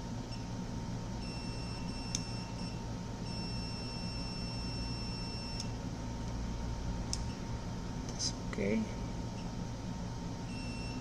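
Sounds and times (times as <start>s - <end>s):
multimeter continuity beep: 1.2s - 5.8s, 10.5s - 11.0s.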